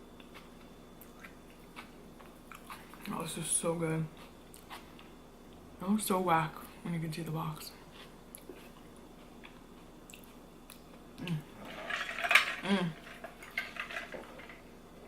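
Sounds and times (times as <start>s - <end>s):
chewing: 0.2s - 3.1s, 4.2s - 5.1s, 7.9s - 11.4s
cutlery clatter: 11.7s - 12.6s.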